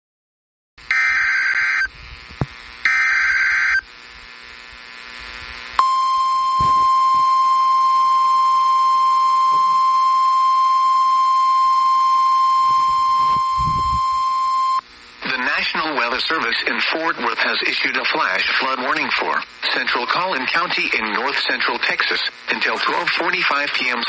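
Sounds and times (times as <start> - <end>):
radio hiss: 0.9 - 7.3, 12.5 - 24.0
steady warning alarm tone: 2.9 - 4.0, 5.8 - 16.9.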